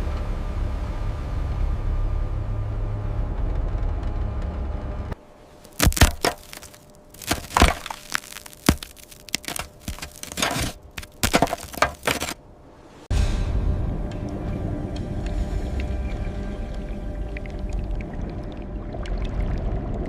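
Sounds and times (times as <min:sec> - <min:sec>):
sharp cracks and snaps: 0:05.6 - 0:12.4.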